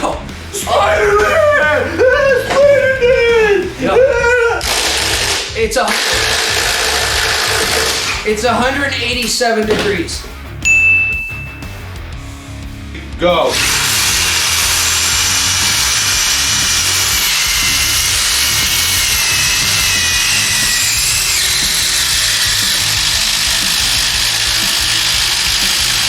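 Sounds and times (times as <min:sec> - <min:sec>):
impact drivers hammering: 0:04.6 - 0:08.2, 0:09.6 - 0:10.2, 0:13.5 - 0:26.0.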